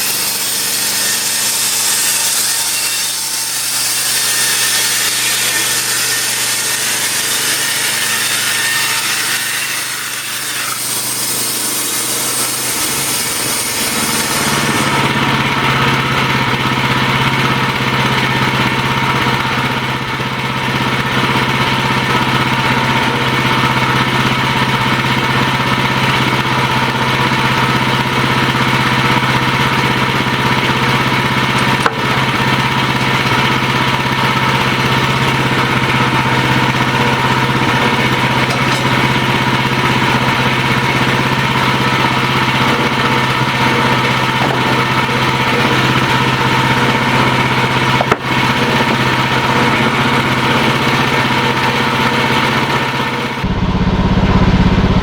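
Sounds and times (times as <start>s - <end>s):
sawmill engine running: 0.0s - 55.0s.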